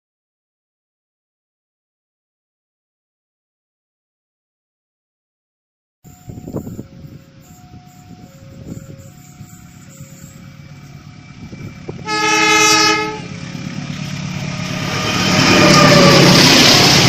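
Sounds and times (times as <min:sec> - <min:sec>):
approaching train rumble: 0:06.1 - 0:17.0
locomotive horn blast: 0:11.9 - 0:13.4.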